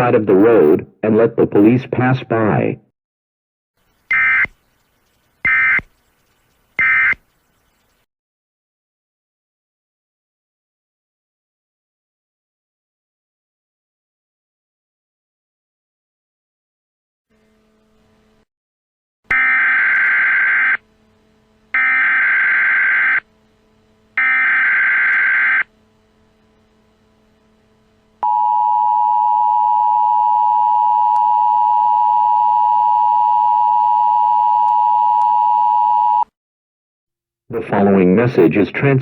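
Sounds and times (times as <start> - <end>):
harsh data bursts: 3.8 - 8.0, 21.7 - 23.3, 24.2 - 25.7.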